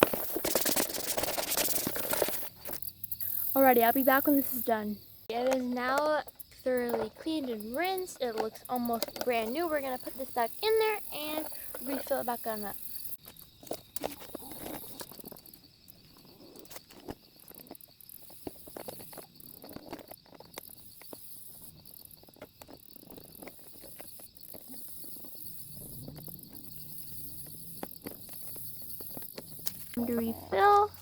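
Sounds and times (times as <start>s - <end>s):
insects chirping: 0.0s - 31.0s.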